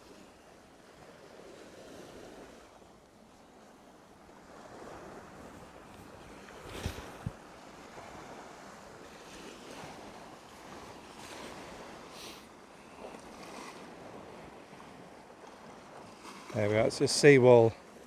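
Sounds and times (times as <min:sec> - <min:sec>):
sea waves washing on shore: 0:01.1 - 0:18.0
breeze: 0:16.6 - 0:17.7.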